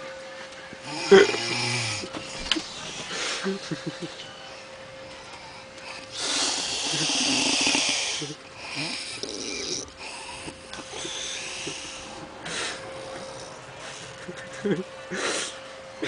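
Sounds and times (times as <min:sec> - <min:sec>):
woman snoring heavily: 0:00.8 - 0:02.2, 0:06.0 - 0:13.7.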